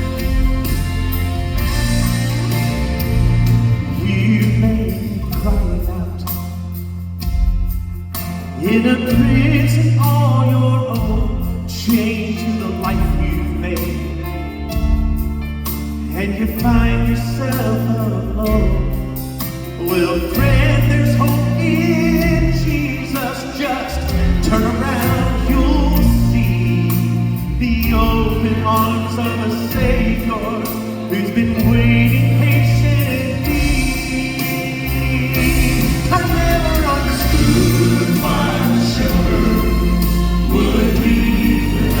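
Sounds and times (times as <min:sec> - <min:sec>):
band with strong bass line: 0:00.0 - 0:42.0
vocal group singing in harmony: 0:19.8 - 0:42.0.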